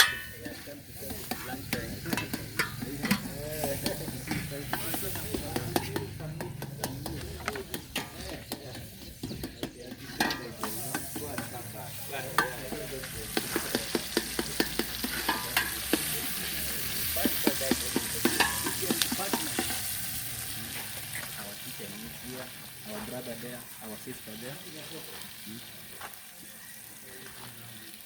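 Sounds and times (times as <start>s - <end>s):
spoon scraping a pot: 0.0s - 11.6s
food sizzling in a pot: 0.0s - 28.0s.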